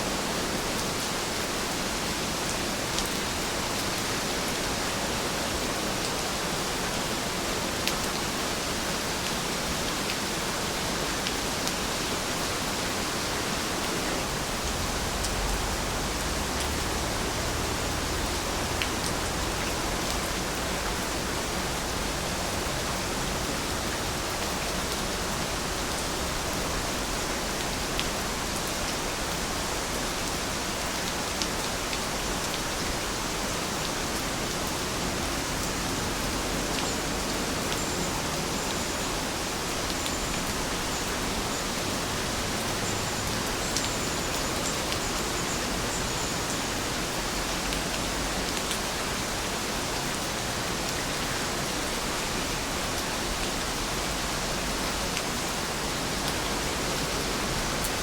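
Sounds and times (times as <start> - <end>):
steady rain hiss: 0.0 - 58.0.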